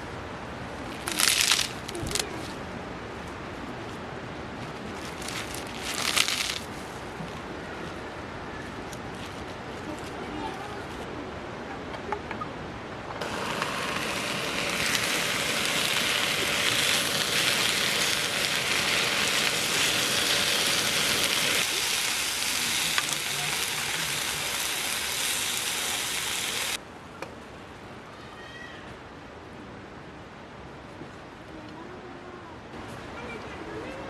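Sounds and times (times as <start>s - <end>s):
food sizzling in a pan: 13.2s - 26.8s.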